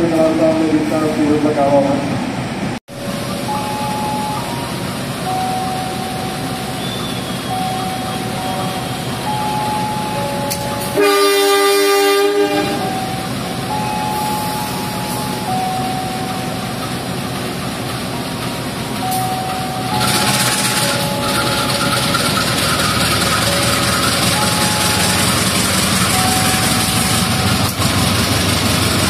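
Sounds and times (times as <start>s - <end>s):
train rumble: 0.0s - 29.0s
locomotive horn blast: 10.5s - 13.2s.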